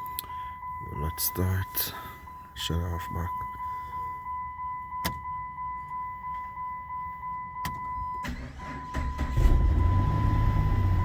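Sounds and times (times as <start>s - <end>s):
car electronic warning tone: 0.0s - 11.0s
car engine cranking: 7.6s - 11.0s.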